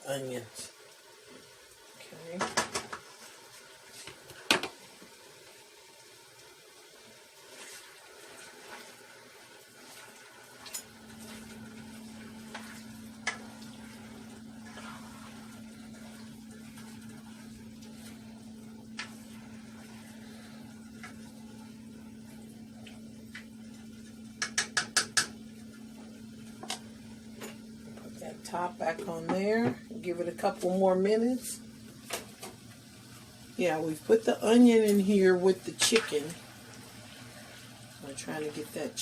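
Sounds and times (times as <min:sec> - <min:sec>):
food frying in oil: 0:00.0 - 0:39.0
utensil stirring in pan: 0:07.3 - 0:30.9
steady hum: 0:10.7 - 0:39.0.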